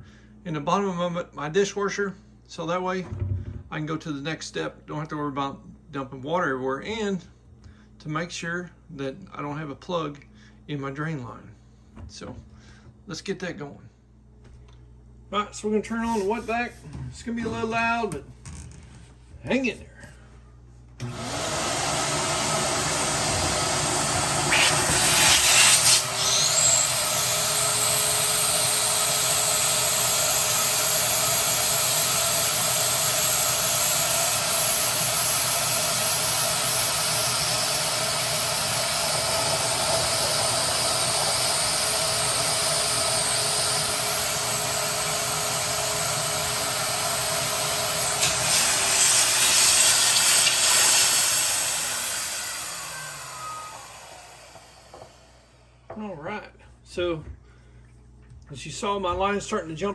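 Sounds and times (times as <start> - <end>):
wet vac sucking water: 21.0 - 55.1.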